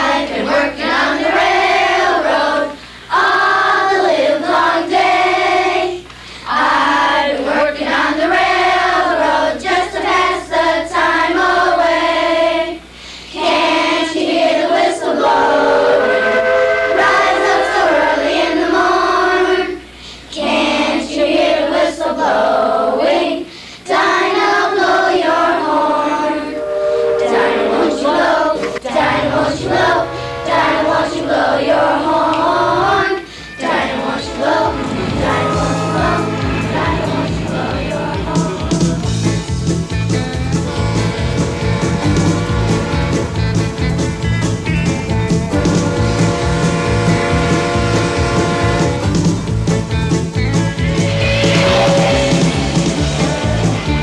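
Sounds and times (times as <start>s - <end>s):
musical backing: 0.0s - 22.6s, 23.9s - 54.0s
choir singing: 0.0s - 39.5s, 51.0s - 54.0s.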